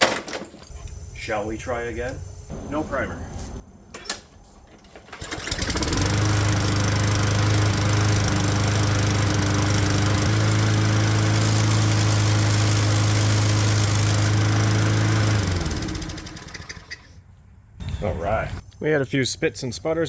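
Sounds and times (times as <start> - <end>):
lawn mower engine running: 5.0 - 17.2.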